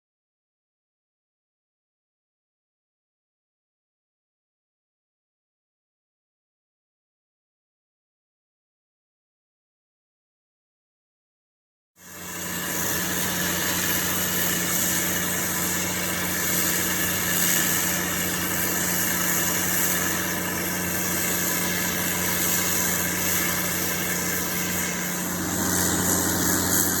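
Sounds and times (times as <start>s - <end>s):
pump machine hum: 12.0s - 27.0s.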